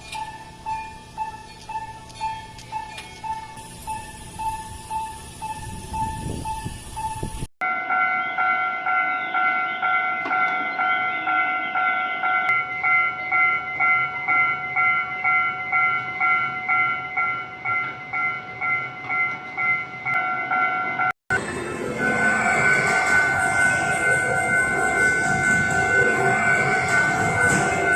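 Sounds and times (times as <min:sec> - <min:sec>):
railroad crossing bell ringing: 0:00.0 - 0:27.9.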